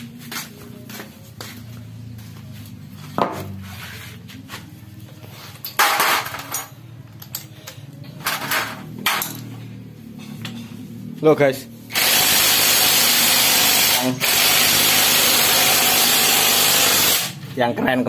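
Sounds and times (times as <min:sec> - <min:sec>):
metal parts clanking and knocking: 0:05.6 - 0:09.6.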